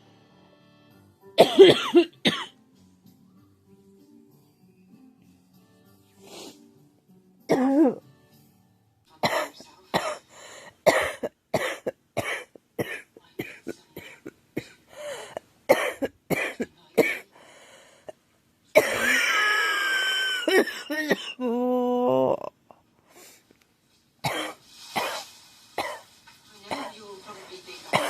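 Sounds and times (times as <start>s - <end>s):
girl coughing: 1.4s - 2.5s, 7.5s - 8.0s, 9.2s - 10.2s, 10.9s - 17.3s, 18.8s - 19.4s, 20.3s - 21.6s.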